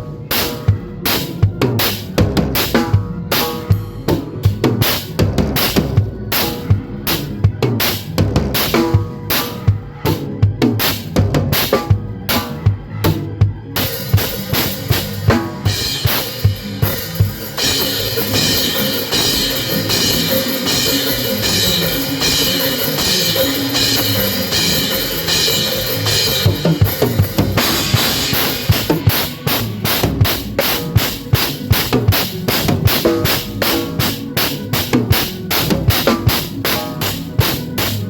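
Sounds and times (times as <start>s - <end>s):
drum kit kick and snare: 0.0s - 38.0s
gospel band playing: 0.0s - 38.0s
cymbals ringing: 13.8s - 38.0s.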